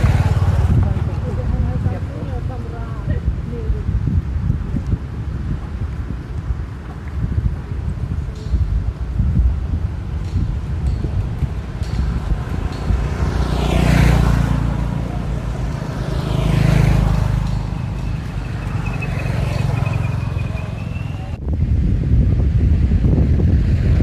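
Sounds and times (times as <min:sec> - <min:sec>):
vehicles passing by: 0:00.0 - 0:24.0
wind on microphone: 0:00.0 - 0:24.0.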